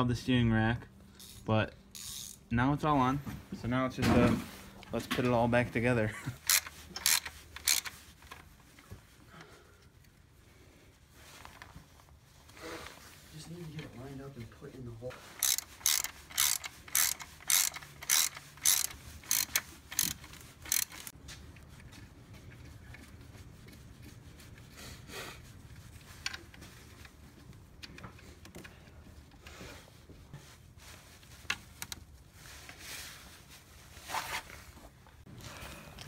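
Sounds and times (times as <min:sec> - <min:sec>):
ratchet wrench clicking: 0:01.2 - 0:02.4, 0:06.4 - 0:08.0, 0:15.4 - 0:21.1.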